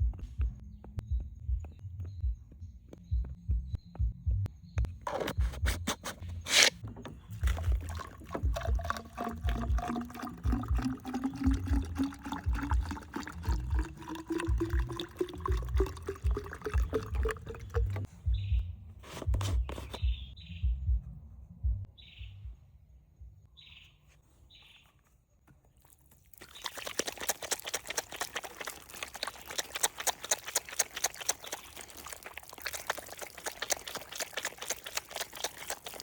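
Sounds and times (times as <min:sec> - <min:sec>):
low throbbing beat: 0:00.0 - 0:05.9, 0:07.4 - 0:23.5
water pouring into a container: 0:06.5 - 0:18.1, 0:26.2 - 0:36.0.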